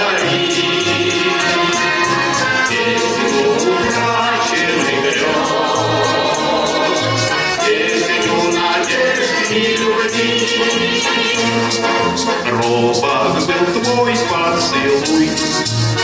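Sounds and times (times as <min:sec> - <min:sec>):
instrumental pop music: 0:00.0 - 0:16.0.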